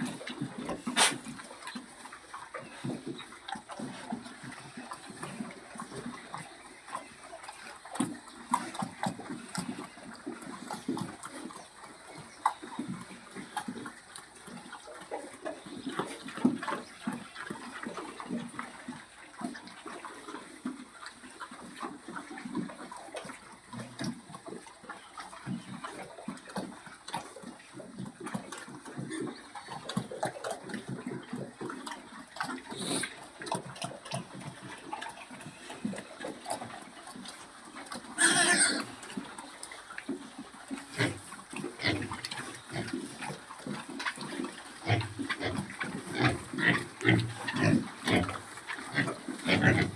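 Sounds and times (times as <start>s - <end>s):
water splashing: 0.0s - 2.1s
pigs grunting: 0.0s - 49.9s.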